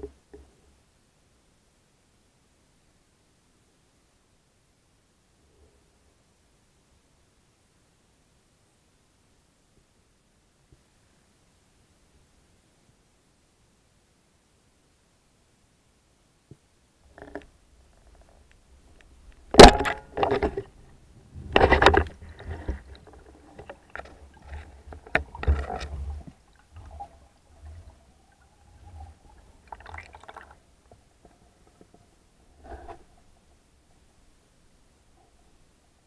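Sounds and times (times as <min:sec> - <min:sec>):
knocks in water: 0:19.6 - 0:20.6
water bubbling and splashing: 0:21.9 - 0:30.8.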